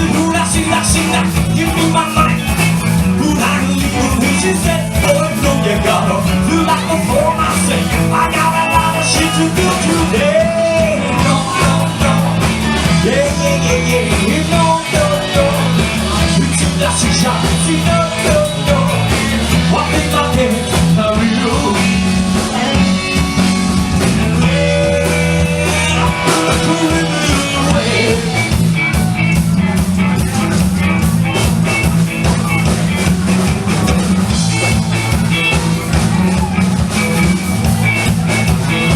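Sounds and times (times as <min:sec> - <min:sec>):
person singing: 0:00.0 - 0:29.5
rock band playing live: 0:00.0 - 0:38.9.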